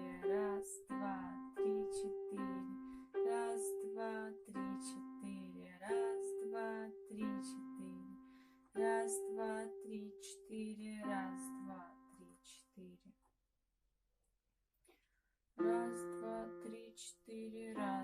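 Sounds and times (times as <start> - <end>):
person singing: 0.0 - 8.2, 8.8 - 12.6, 15.6 - 18.0
slow piano playing: 0.0 - 10.2, 11.0 - 12.2, 15.6 - 17.0, 17.7 - 18.0.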